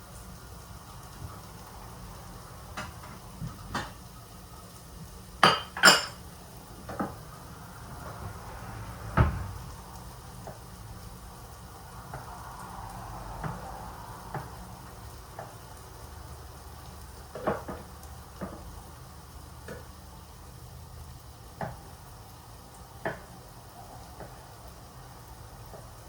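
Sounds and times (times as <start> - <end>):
faint steady hiss: 0.0 - 26.0
utensil clinking against cookware: 5.4 - 6.2.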